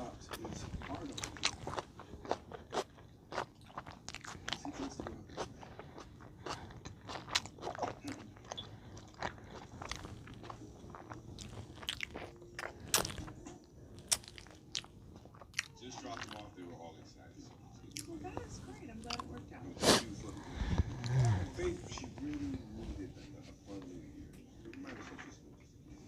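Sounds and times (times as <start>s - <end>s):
person chewing sandwich: 0.0s - 16.6s, 17.4s - 23.9s
wet crunchy mouth clicks: 10.9s - 13.4s.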